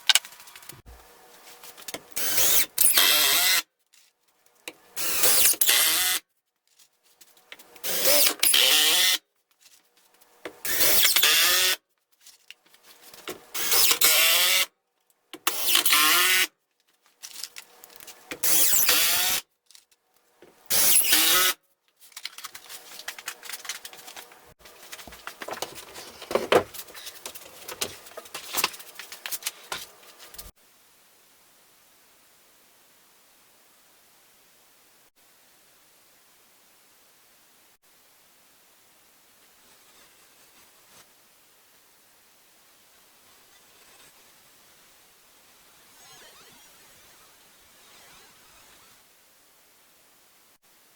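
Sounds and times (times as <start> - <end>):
power tool bursts: 5.0 - 6.2, 7.8 - 9.2, 13.6 - 14.7, 18.4 - 19.4.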